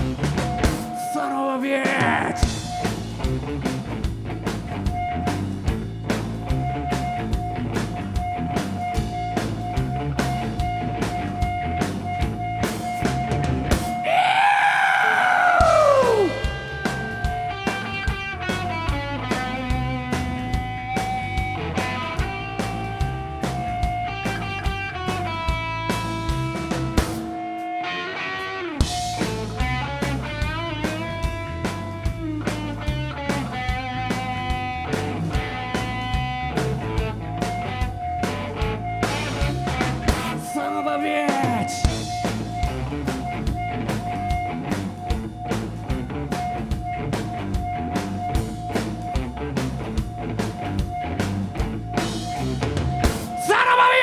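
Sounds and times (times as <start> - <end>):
bass guitar: 0.0 - 1.0, 1.8 - 40.6, 41.4 - 54.0
drum kit: 0.0 - 1.1, 1.8 - 27.8, 28.8 - 40.6, 41.3 - 53.8
electric guitar: 2.4 - 40.5.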